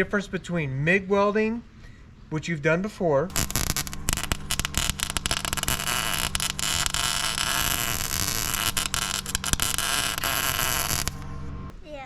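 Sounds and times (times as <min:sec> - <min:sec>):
welding arc crackling: 0:03.3 - 0:11.5
generator engine humming: 0:03.3 - 0:11.7.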